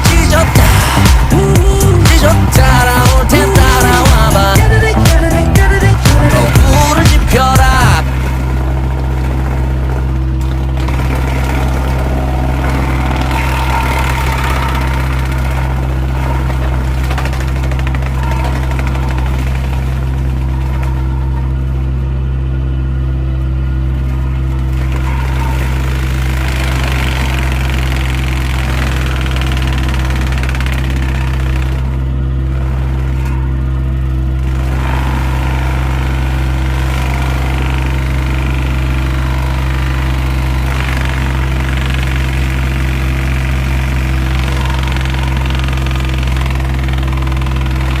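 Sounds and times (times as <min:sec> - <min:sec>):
heavy equipment engine running: 0:00.0 - 0:48.0.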